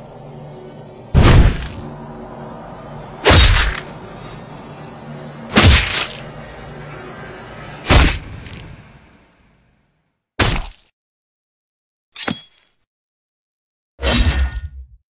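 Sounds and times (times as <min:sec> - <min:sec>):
background music: 0:00.0 - 0:10.0
loud crash: 0:01.1 - 0:01.9.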